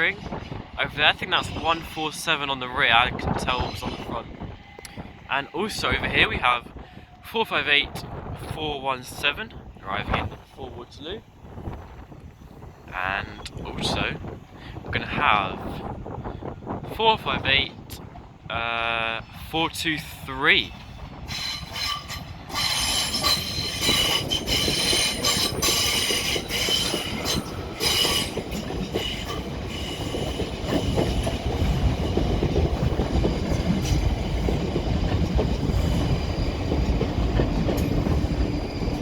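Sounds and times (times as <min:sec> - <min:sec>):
train wheels squealing: 0:03.4 - 0:06.0, 0:20.7 - 0:39.0
wheels rumbling on track: 0:19.2 - 0:39.0.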